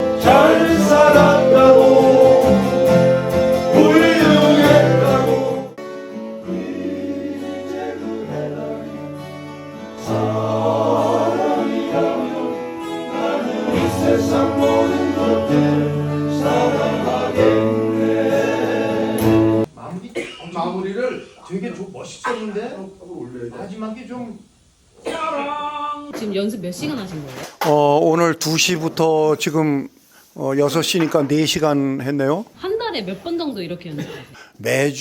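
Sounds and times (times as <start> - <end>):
group of voices singing: 0.0 - 5.8, 6.4 - 19.7
guitar accompaniment: 0.0 - 19.7.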